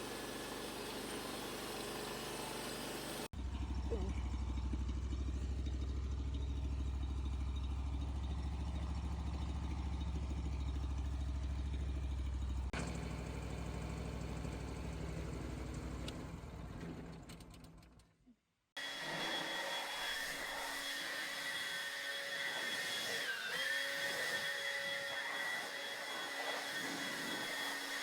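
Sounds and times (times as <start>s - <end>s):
sawmill gas engine running: 0.0s - 17.2s, 18.8s - 28.0s.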